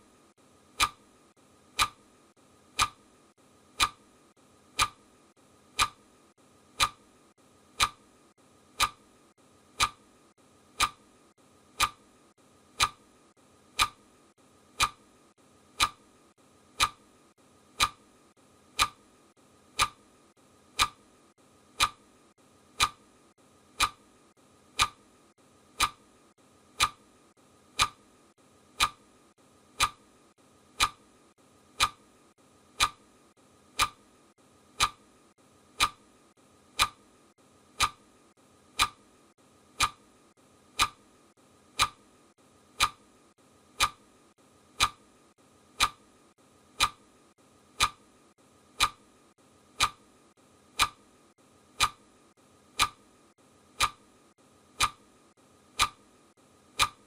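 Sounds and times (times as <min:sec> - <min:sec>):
clock ticking: 0:00.7 - 0:01.0, 0:01.7 - 0:02.0, 0:02.7 - 0:03.0, 0:03.7 - 0:04.0, 0:04.7 - 0:05.1, 0:05.7 - 0:06.1, 0:06.7 - 0:07.1, 0:07.7 - 0:08.1, 0:08.7 - 0:10.1, 0:10.7 - 0:11.1, 0:11.7 - 0:12.1, 0:12.7 - 0:13.1, 0:13.7 - 0:14.1, 0:14.7 - 0:15.1, 0:15.7 - 0:16.1, 0:16.7 - 0:17.1, 0:17.7 - 0:18.1, 0:18.7 - 0:19.0, 0:19.7 - 0:20.0, 0:20.7 - 0:21.1, 0:21.7 - 0:22.1, 0:22.7 - 0:23.1, 0:23.7 - 0:24.1, 0:24.7 - 0:25.0, 0:25.7 - 0:26.1, 0:26.7 - 0:27.1, 0:27.7 - 0:28.0, 0:28.8 - 0:29.1, 0:29.7 - 0:30.1, 0:30.7 - 0:31.1, 0:31.7 - 0:32.1, 0:32.7 - 0:33.1, 0:33.7 - 0:34.0, 0:34.7 - 0:35.1, 0:35.7 - 0:36.1, 0:36.7 - 0:37.0, 0:37.7 - 0:38.0, 0:38.7 - 0:39.0, 0:39.7 - 0:40.1, 0:40.7 - 0:41.0, 0:41.7 - 0:42.0, 0:42.8 - 0:43.0, 0:43.7 - 0:44.0, 0:44.8 - 0:45.1, 0:45.8 - 0:46.1, 0:46.8 - 0:47.1, 0:47.7 - 0:48.1, 0:48.8 - 0:49.0, 0:49.8 - 0:50.0, 0:50.7 - 0:51.0, 0:51.7 - 0:52.0, 0:52.8 - 0:53.0, 0:53.8 - 0:54.1, 0:54.8 - 0:55.1, 0:55.8 - 0:56.0, 0:56.8 - 0:57.0.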